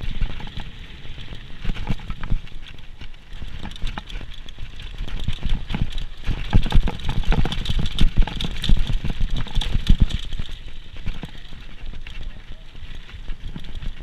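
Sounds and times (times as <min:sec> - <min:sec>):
mountain bike clattering: 0:00.0 - 0:14.0.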